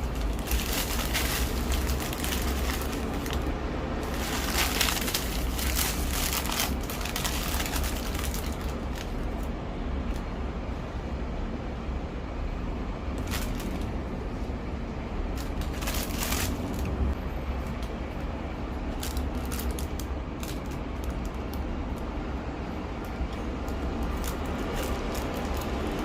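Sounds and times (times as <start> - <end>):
food packaging crinkling: 0.0 - 9.5
steady low rumble: 0.0 - 26.0.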